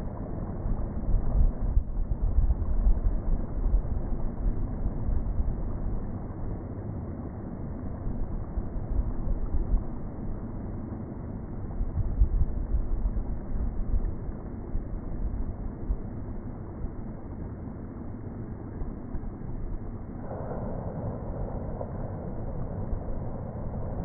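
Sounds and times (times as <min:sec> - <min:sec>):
wind buffeting microphone: 0:20.2 - 0:24.0.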